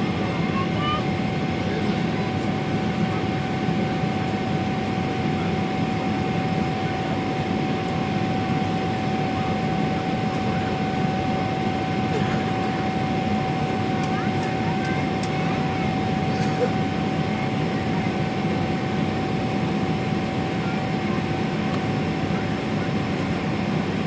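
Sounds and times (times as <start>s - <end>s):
jet engine and airflow rumble: 0.0s - 24.0s.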